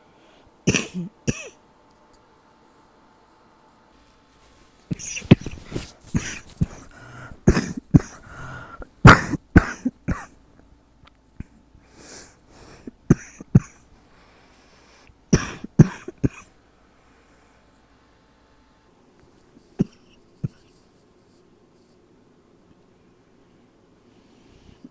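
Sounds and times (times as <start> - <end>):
person coughing: 0.7 - 1.6, 4.9 - 10.4, 12.6 - 13.9, 15.3 - 16.6, 19.8 - 20.7.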